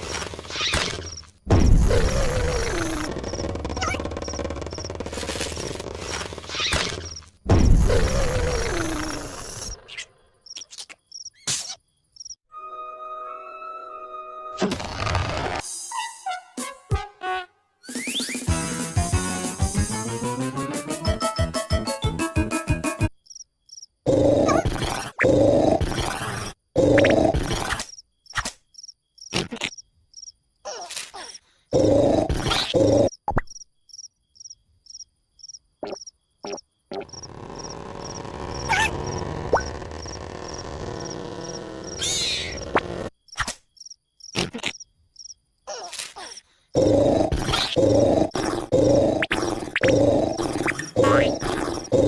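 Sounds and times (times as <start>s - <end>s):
cartoon snoring and grunting: 1.8s - 4.7s, 7.8s - 9.9s, 24.0s - 27.8s, 31.7s - 33.2s, 37.1s - 43.1s, 46.8s - 52.0s
cricket chirping: 9.1s - 12.4s, 23.1s - 24.4s, 27.6s - 30.7s, 32.8s - 45.8s.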